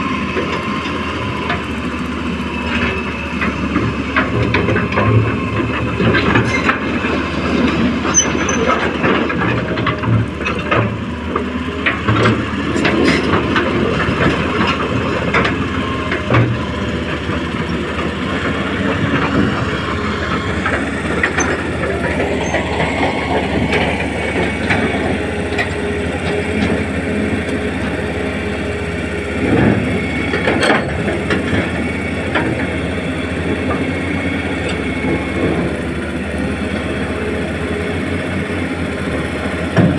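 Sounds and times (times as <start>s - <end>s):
model excavator running: 0.0s - 39.9s.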